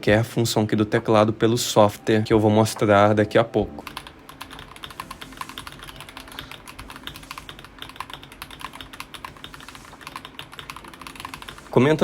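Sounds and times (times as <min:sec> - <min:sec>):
mechanical keyboard typing: 0:03.7 - 0:12.0.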